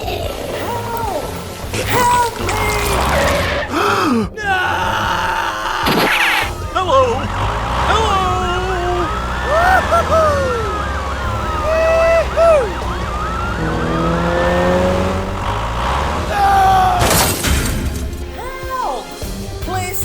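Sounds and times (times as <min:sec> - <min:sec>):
siren wailing: 0:05.9 - 0:17.1
low engine drone: 0:05.9 - 0:18.3.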